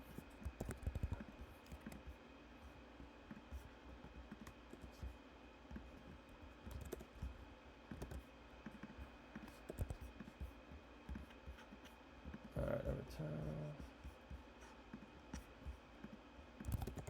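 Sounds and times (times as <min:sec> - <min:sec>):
typing on a computer keyboard: 0:00.1 - 0:02.2, 0:05.7 - 0:12.5, 0:16.0 - 0:17.0.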